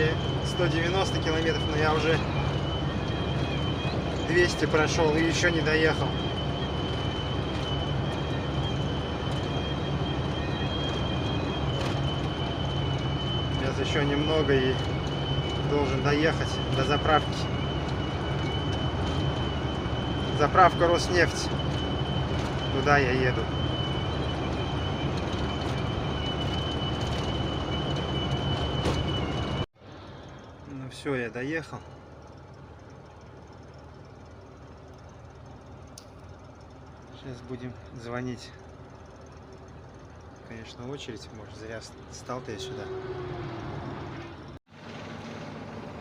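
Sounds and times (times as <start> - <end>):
high-pitched whistle: 0.0 - 29.7, 40.5 - 44.4
engine and road noise: 0.0 - 46.0.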